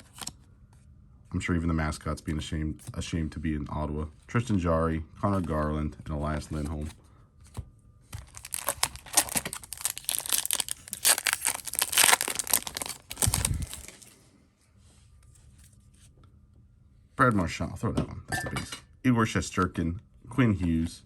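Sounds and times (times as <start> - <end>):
foil wrapper tearing and crinkling: 0.0 - 0.3, 8.2 - 14.1.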